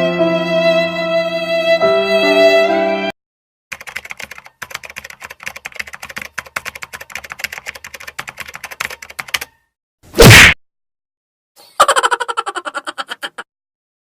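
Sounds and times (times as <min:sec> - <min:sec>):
keyboard typing clicks: 0:03.7 - 0:09.6.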